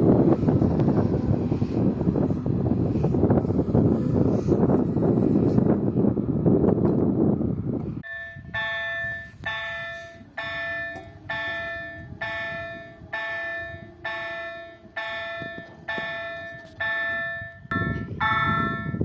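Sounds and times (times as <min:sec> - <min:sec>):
loud rumbling noise: 0:00.0 - 0:19.0
level crossing warning bell: 0:08.0 - 0:19.0.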